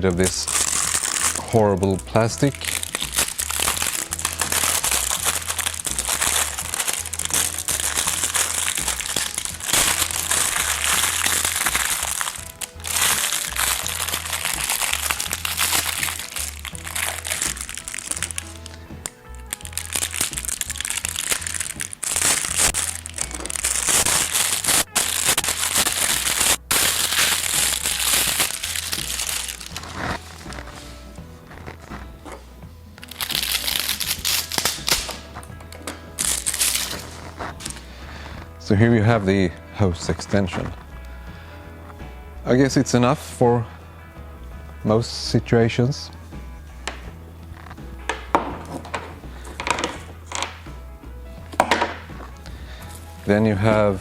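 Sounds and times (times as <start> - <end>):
plastic packaging crinkling: 0.0 - 32.4, 33.0 - 38.4
background music: 0.0 - 54.0.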